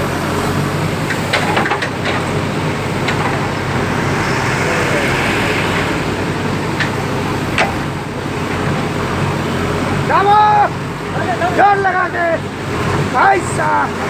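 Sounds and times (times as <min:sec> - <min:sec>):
diesel engine running: 0:00.0 - 0:14.0
hiss: 0:02.9 - 0:08.0.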